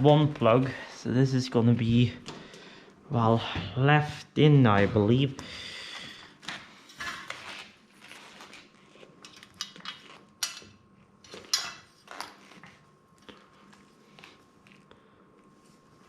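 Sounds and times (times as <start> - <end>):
metal parts clinking: 9.2 - 10.7, 11.3 - 12.5.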